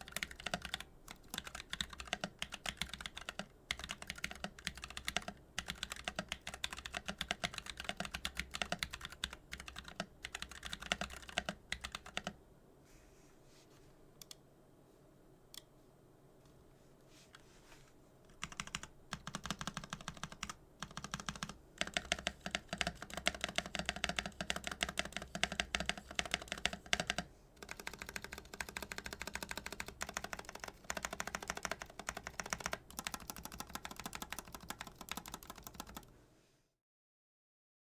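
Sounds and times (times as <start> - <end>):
mechanical keyboard typing: 0.0 - 12.4, 18.3 - 36.1.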